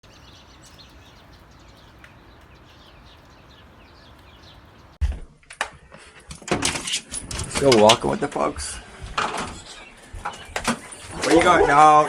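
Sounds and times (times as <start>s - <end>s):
bird chirping: 0.0s - 5.0s, 7.7s - 12.0s
loud knocks and clicks: 5.0s - 8.0s.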